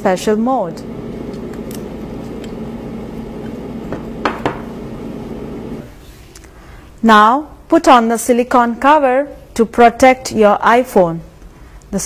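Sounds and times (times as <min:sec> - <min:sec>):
steady hum: 0:00.6 - 0:06.0.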